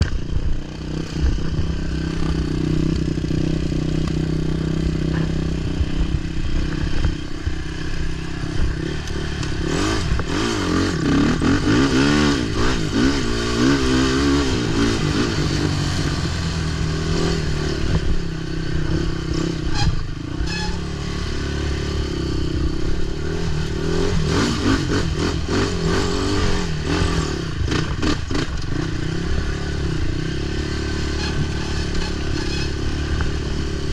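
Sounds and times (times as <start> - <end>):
atv engine revving: 0.0 - 33.9.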